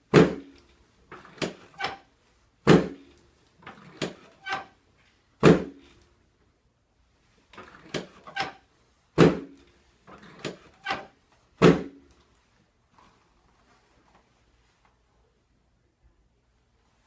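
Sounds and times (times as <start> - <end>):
dull thud: 2.6 - 3.0, 9.2 - 9.6, 11.6 - 12.0.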